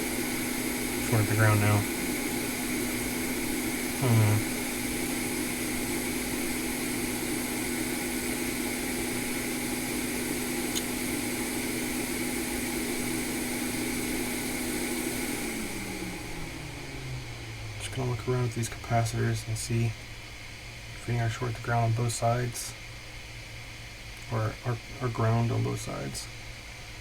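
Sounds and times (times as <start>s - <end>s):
electric blower fan humming: 0.0s - 27.0s.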